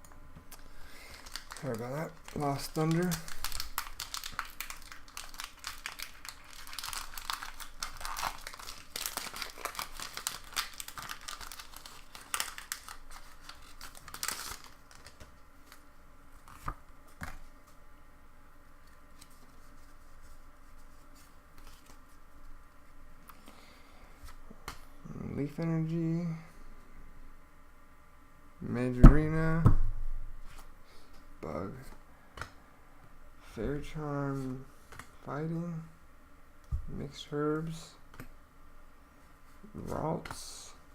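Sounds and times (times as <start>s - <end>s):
foil wrapper crinkling and tearing: 0.5s - 15.8s.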